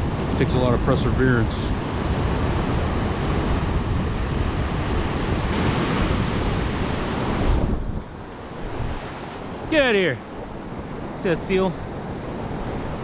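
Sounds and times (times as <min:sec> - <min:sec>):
wind buffeting microphone: 0:00.0 - 0:11.2
ocean surf on beach: 0:00.0 - 0:13.0.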